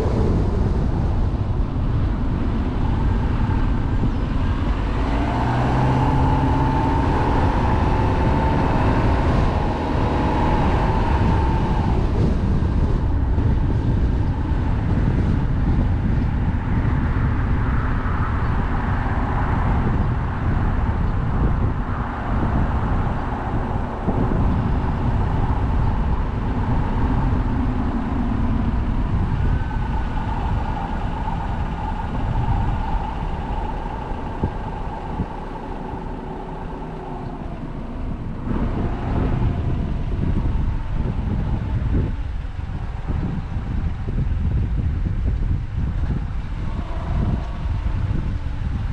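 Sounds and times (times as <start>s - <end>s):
car engine rumble: 0.0s - 48.9s
faint whining tone: 19.6s - 48.9s.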